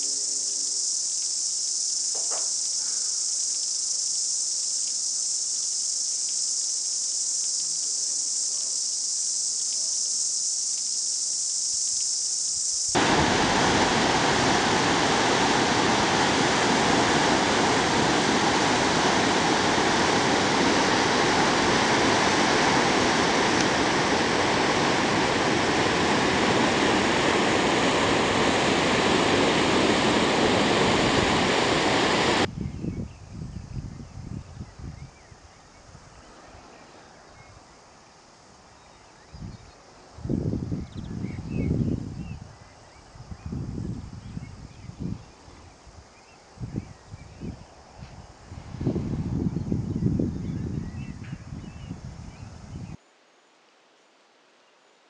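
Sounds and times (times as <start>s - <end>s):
cicadas chorus: 0.0s - 55.0s
waterfall rushing: 13.0s - 32.5s.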